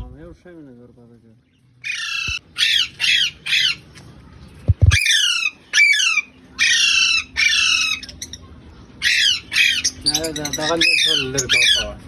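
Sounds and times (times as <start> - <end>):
parrots squawking: 1.8 - 3.8, 4.8 - 8.4, 9.0 - 12.0
low thumps: 4.7 - 5.0.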